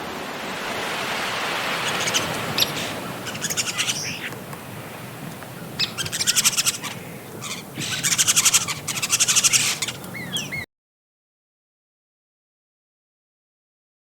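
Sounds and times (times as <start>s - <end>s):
water rushing: 0.0s - 10.6s
bird whistles: 1.8s - 4.4s, 5.8s - 10.7s
small birds chirping: 1.8s - 10.7s.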